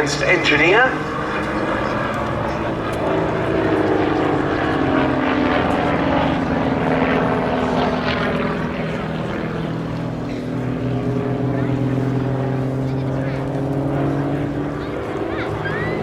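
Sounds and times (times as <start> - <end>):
propeller aircraft engines droning: 0.0 - 16.0.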